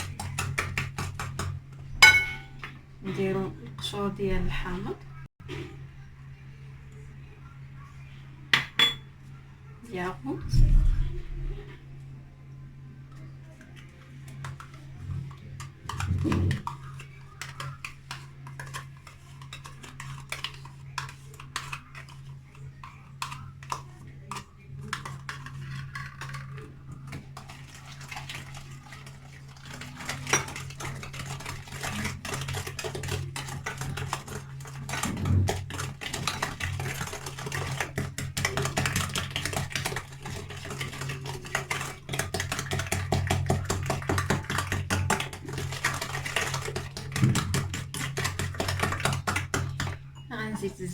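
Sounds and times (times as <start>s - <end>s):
steady low hum: 9.3s - 13.5s
utensil scraping mixing bowl: 13.6s - 50.9s.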